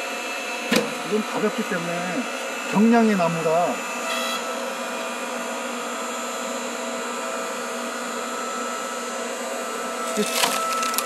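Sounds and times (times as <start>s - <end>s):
log splitter humming: 9.9s - 11.0s
log cracking: 10.1s - 11.0s.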